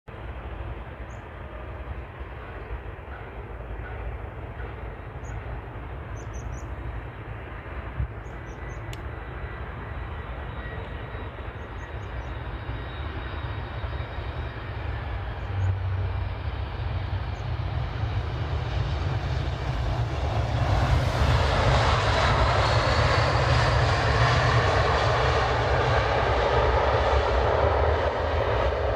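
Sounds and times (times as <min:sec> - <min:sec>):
airliner jet engine noise: 0:00.1 - 0:28.9.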